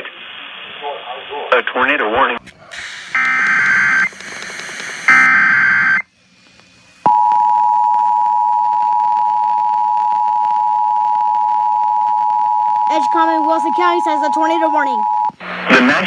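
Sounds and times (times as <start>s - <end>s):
warbling data tone screech: 2.7s - 6.1s.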